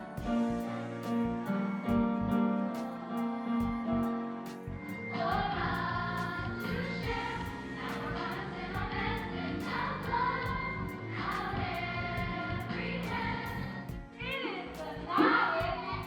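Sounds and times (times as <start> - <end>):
light ticking beat: 0.0 - 3.0
choir singing held notes: 0.0 - 16.0.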